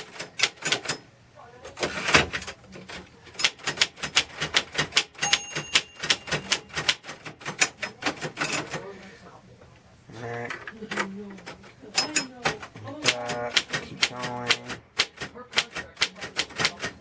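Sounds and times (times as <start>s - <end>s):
typewriter key strikes: 0.0s - 1.0s, 1.8s - 8.8s, 10.9s - 17.0s
typewriter bell ringing: 5.2s - 7.1s, 12.0s - 12.3s.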